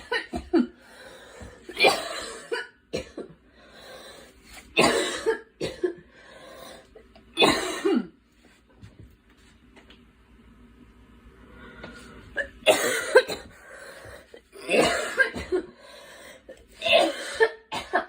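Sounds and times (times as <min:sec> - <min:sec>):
breathing: 0:00.8 - 0:01.7, 0:03.5 - 0:04.4, 0:06.1 - 0:06.9, 0:11.4 - 0:12.4, 0:13.5 - 0:14.4, 0:15.7 - 0:16.6
girl coughing: 0:01.7 - 0:03.3, 0:04.8 - 0:06.0, 0:07.4 - 0:08.1, 0:12.4 - 0:13.6, 0:14.6 - 0:15.8, 0:16.8 - 0:18.0.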